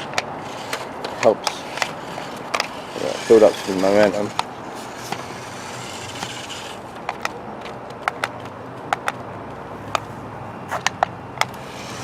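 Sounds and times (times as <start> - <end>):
plastic car clicks and knocks: 0.0 - 2.8, 3.4 - 9.3, 10.8 - 12.0
rc car electric motor humming: 0.0 - 7.3, 11.4 - 12.0.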